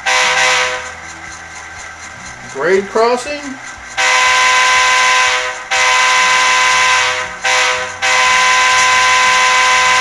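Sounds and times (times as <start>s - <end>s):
multi-chime diesel horn blasts: 0.1s - 0.8s, 4.0s - 10.0s.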